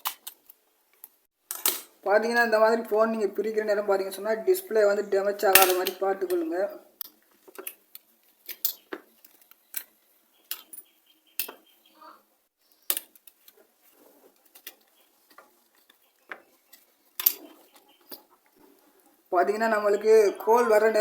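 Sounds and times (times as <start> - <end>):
plastic and metal parts clicking: 0.0 - 1.9.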